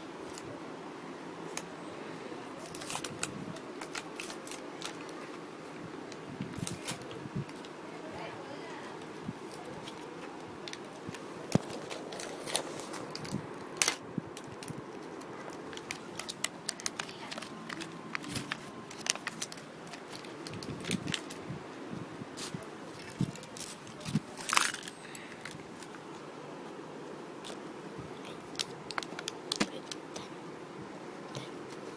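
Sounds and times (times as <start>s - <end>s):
plastic packaging crinkling: 2.6s - 5.4s, 6.1s - 7.8s, 9.0s - 21.6s, 22.4s - 26.0s, 28.3s - 30.2s.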